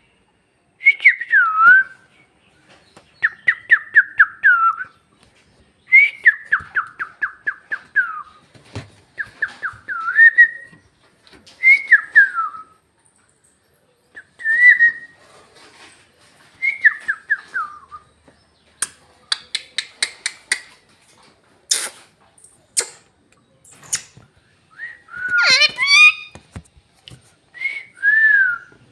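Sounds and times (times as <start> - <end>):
parrot clicks and squeaks: 18.8 - 20.8, 22.8 - 23.1, 23.7 - 24.2, 25.2 - 26.6
parrot whistling: 25.1 - 26.4.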